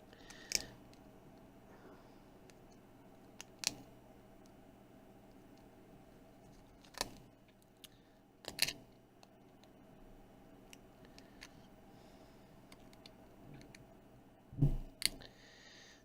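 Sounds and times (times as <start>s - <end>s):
sharp clicks of small parts: 0.3s - 0.8s, 7.8s - 9.7s.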